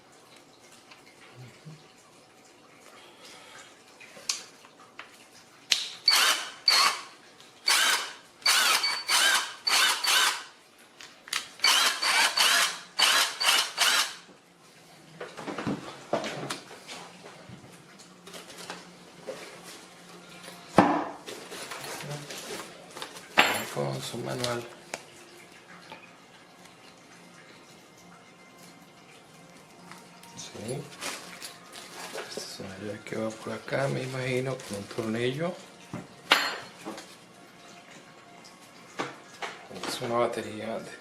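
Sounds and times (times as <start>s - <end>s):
impact wrench motor whirring: 6.0s - 7.1s, 7.7s - 10.5s, 11.6s - 14.2s.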